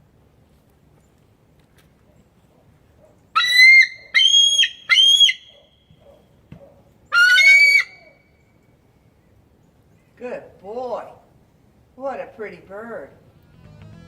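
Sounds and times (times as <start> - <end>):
bird piercing calls: 3.3 - 6.3, 7.0 - 8.7.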